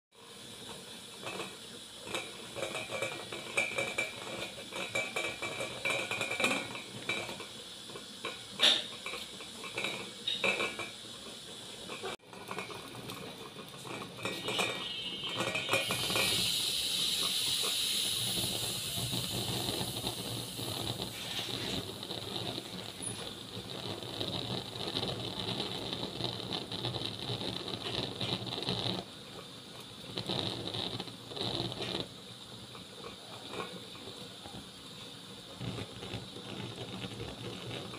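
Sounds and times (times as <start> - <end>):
cooking fire hissing: 0.1 - 37.9
dishes and cutlery clinking: 1.2 - 7.5, 8.2 - 11.0, 11.9 - 16.4.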